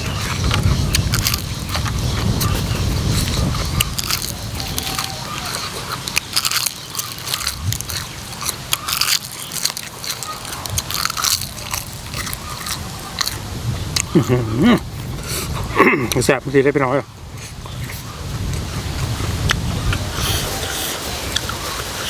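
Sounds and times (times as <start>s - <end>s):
person chewing food: 0.0s - 16.2s, 17.3s - 22.0s
crunches and crackling clicks: 0.0s - 16.4s.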